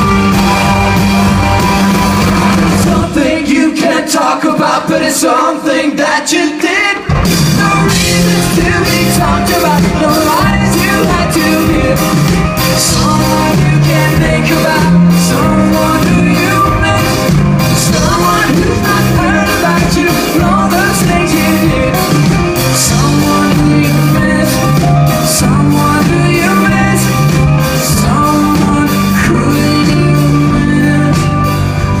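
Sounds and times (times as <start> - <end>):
electric guitar: 0.0 - 3.1, 7.1 - 32.0
bass guitar: 0.0 - 3.4, 7.1 - 32.0
drums steady beat: 0.0 - 3.9, 7.0 - 32.0
person singing: 0.0 - 32.0.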